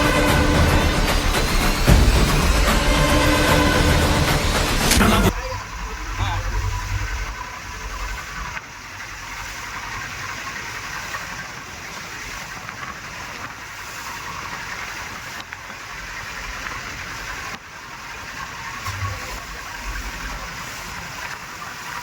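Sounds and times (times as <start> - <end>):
motorboat engine and water rush: 0.0 - 22.0.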